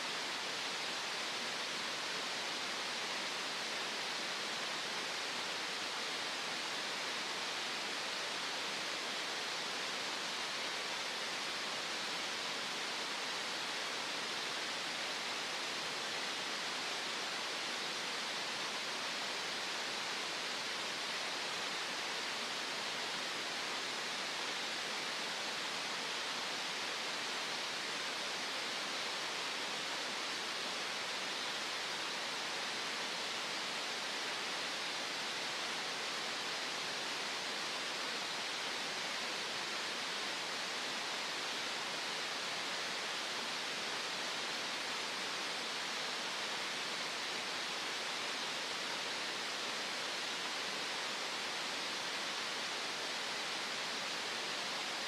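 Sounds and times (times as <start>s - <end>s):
steady hiss noise: 0.0s - 55.0s.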